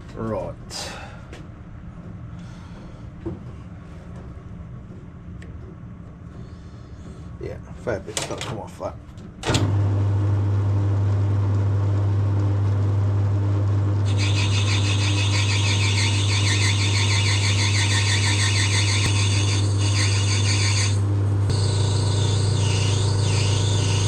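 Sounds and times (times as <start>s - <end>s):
lathe motor humming: 14.0s - 24.0s
lathe tool cutting metal: 14.0s - 24.0s.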